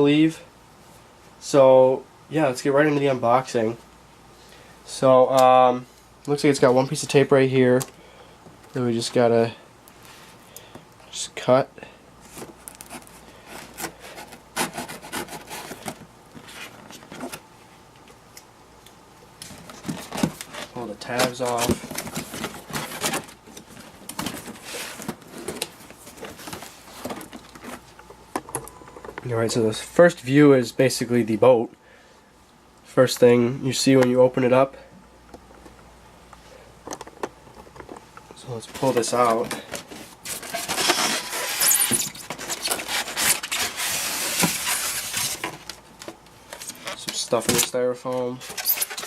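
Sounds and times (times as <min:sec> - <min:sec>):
foam and plastic scraping: 0:12.2 - 0:17.4, 0:19.5 - 0:28.0, 0:38.5 - 0:49.0
cardboard and packing rustling: 0:12.2 - 0:17.5, 0:19.4 - 0:29.8, 0:37.0 - 0:49.0
cardboard flaps clicking and scraping: 0:19.5 - 0:27.9.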